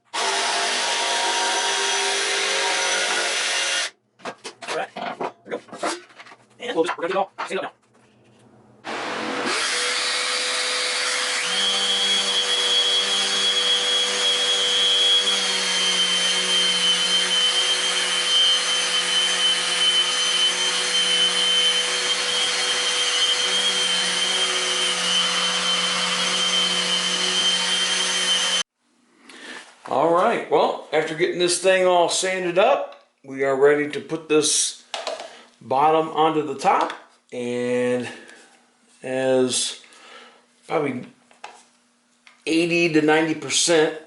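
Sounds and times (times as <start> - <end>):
electric power sander running: 8.8 - 28.6.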